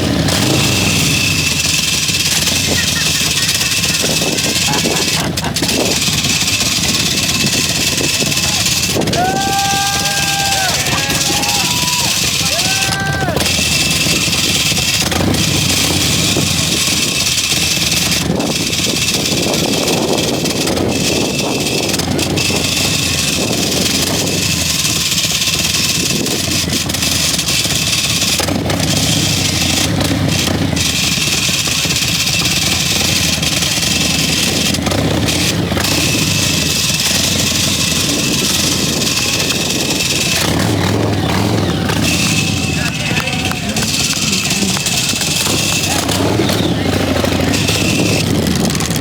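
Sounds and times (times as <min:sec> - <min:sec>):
motorcycle engine running at low revs: 0:00.0 - 0:49.0.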